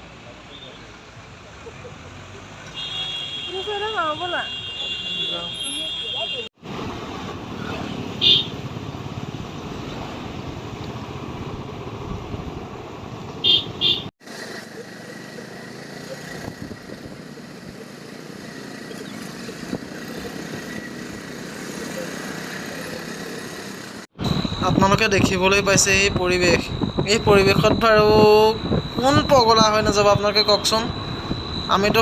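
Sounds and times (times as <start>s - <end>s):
wind noise on microphone: 16.4s - 17.8s, 24.2s - 32.0s
short beeps: 24.2s - 32.0s.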